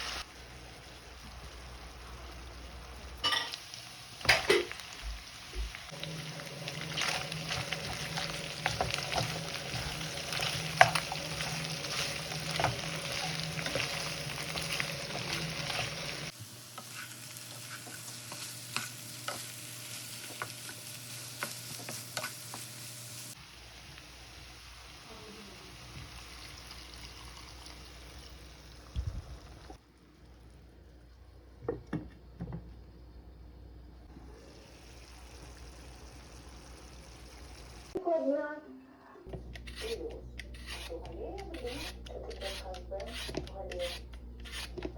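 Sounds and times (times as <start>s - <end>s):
pork sizzling in a pan: 0.0s - 28.8s, 34.2s - 38.0s
stirring clicks and knocks: 5.0s - 19.5s.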